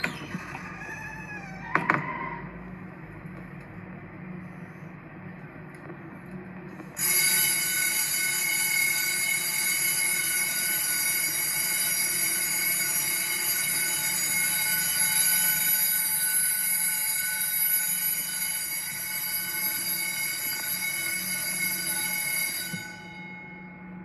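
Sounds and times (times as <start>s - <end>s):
fire alarm bells ringing: 0.0s - 1.5s, 7.0s - 24.0s.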